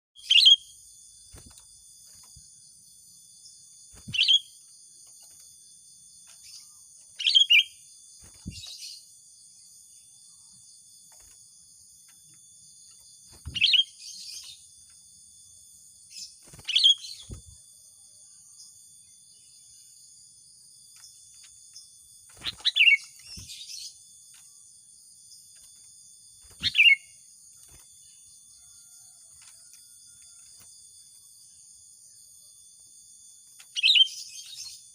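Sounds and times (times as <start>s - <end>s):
insects chorus: 0.2s - 34.9s
bulbul calling: 4.0s - 4.6s, 26.6s - 27.2s.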